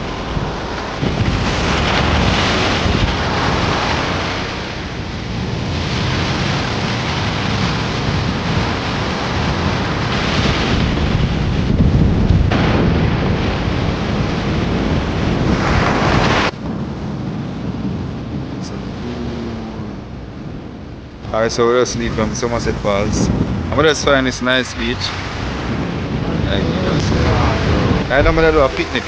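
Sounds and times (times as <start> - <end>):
deep rumble: 0.0 - 29.0
waterfall rushing: 18.6 - 20.3, 21.2 - 29.0.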